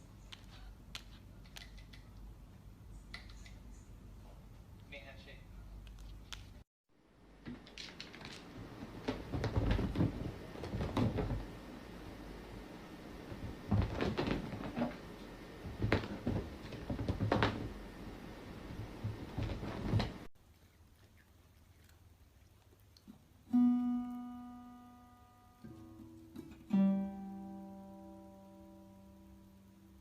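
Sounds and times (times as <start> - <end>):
irregular knocking and banging: 9.0 - 11.6, 13.3 - 17.8.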